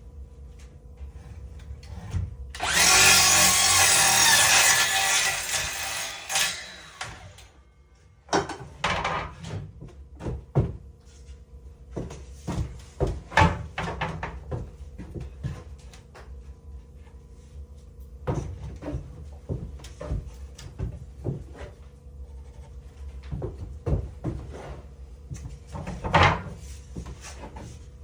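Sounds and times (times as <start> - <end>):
power tool running: 2.6 - 7.6
wooden knocks and clatters: 22.6 - 27.8.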